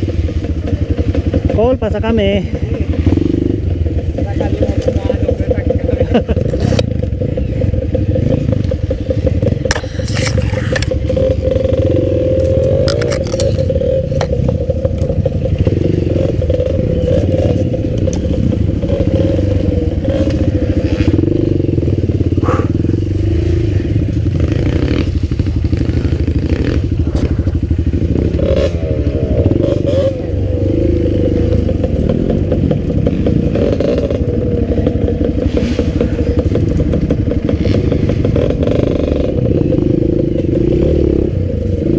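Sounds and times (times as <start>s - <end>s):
dirt bike engine revving: 0.0s - 41.9s
knocks and clatter: 31.1s - 40.8s.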